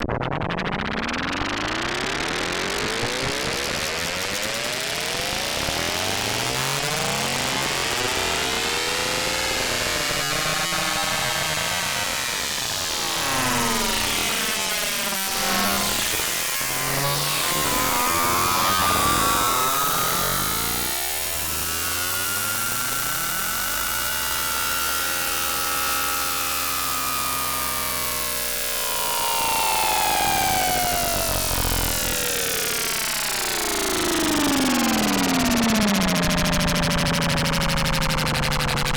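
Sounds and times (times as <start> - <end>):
synth tones sweeping in pitch: 13.2 - 25.3, 27.1 - 38.9.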